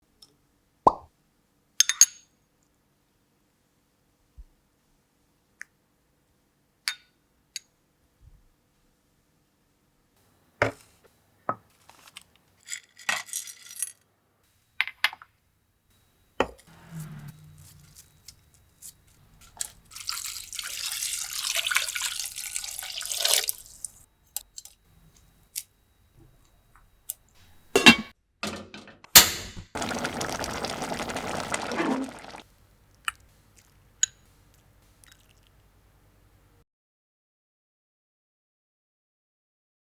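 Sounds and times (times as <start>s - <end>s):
water pouring: 19.1s - 24.0s, 29.8s - 32.5s.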